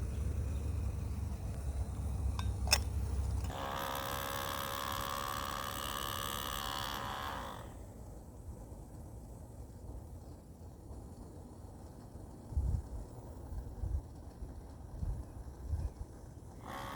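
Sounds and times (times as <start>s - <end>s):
milk frother motor whirring: 0.0s - 8.0s, 16.6s - 16.9s.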